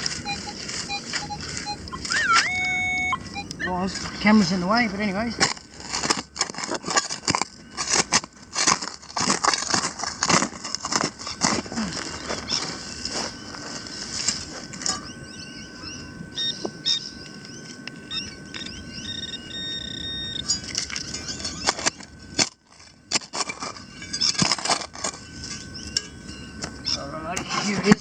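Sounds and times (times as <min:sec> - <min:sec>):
short high beeps: 0:00.0 - 0:04.6
hand digger scraping soil: 0:20.8 - 0:25.6.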